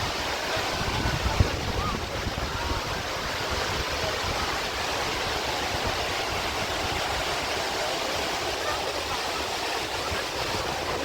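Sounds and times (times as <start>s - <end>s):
waterfall pouring: 0.0s - 11.0s.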